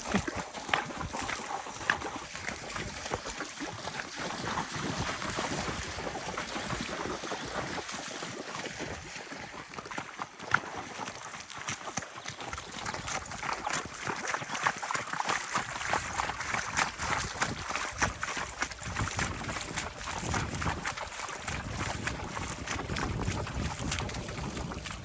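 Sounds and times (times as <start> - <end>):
water wheel paddles splashing: 0.0 - 25.0
wind rumble on microphone: 4.3 - 8.0, 15.8 - 25.0.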